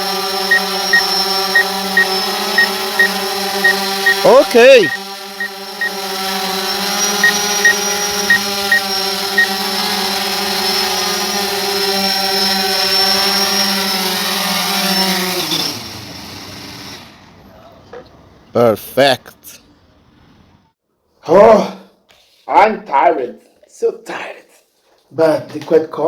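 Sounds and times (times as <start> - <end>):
drone propellers humming: 0.0 - 11.6
short high beeps: 0.5 - 5.5, 7.1 - 9.5.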